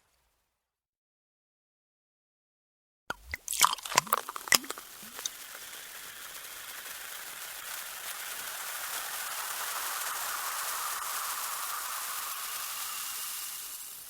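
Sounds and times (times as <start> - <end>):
liquid splashing and gurgling: 3.1 - 6.0
champagne cork popping: 3.1 - 14.0
fizzing bubbles hiss: 3.1 - 14.0.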